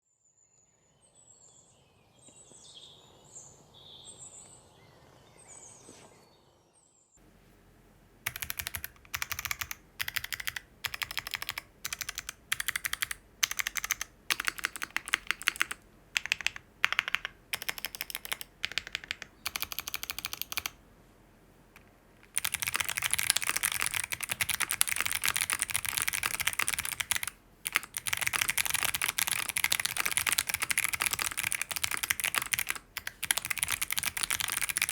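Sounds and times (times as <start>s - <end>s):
fast typing on keyboard: 8.3s - 20.8s, 22.3s - 34.9s
keyboard keys clicking: 8.3s - 20.8s, 21.8s - 34.9s.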